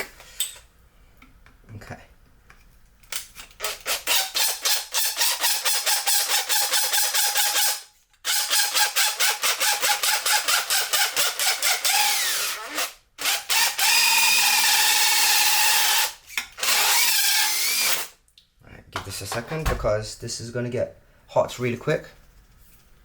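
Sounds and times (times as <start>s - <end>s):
power drill motor: 3.6s - 18.1s.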